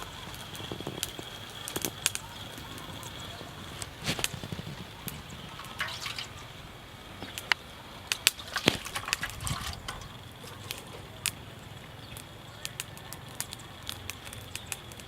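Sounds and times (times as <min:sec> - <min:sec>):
water sloshing and dripping: 0:00.0 - 0:11.0.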